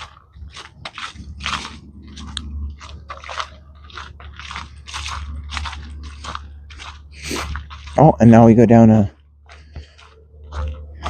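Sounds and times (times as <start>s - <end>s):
footsteps crunching on a trail: 0.0s - 11.0s
low steady rumble: 0.0s - 11.0s.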